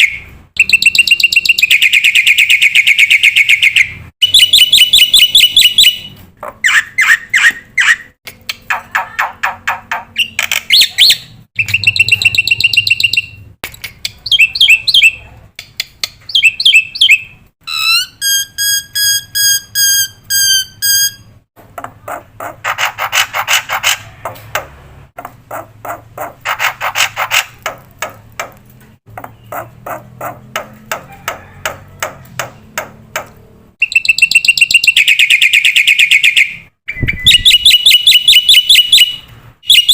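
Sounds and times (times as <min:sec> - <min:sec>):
bird chirps and trills: 0:00.0 - 0:15.2, 0:15.8 - 0:21.4, 0:29.1 - 0:31.5, 0:33.8 - 0:39.9
squeaky bird notes: 0:00.0 - 0:15.2, 0:16.1 - 0:21.4, 0:33.8 - 0:39.9.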